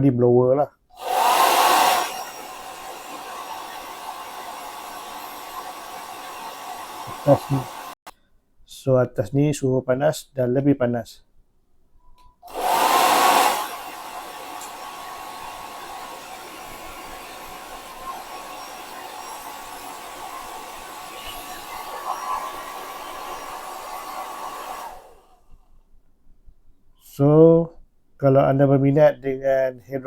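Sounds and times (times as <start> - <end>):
hair dryer running: 1.0 - 8.1, 12.5 - 25.4
thin steady whine: 1.1 - 8.0, 13.0 - 25.3.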